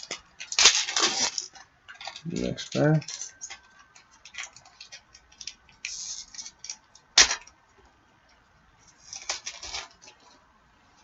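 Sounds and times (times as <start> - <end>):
foil wrapper tearing: 0.0 - 2.8, 4.2 - 7.3, 9.0 - 10.3
foil wrapper crinkling: 0.0 - 7.4, 8.9 - 10.4.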